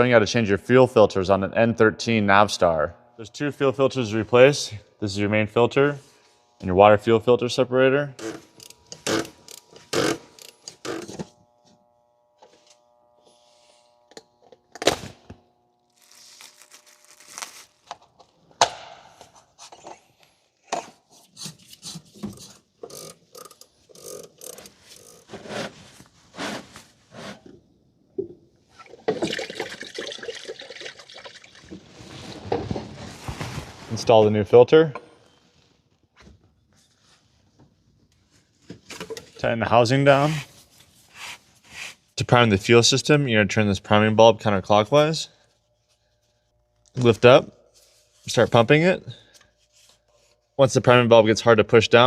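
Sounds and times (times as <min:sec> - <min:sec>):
rustling noise: 0:31.7 - 0:34.4.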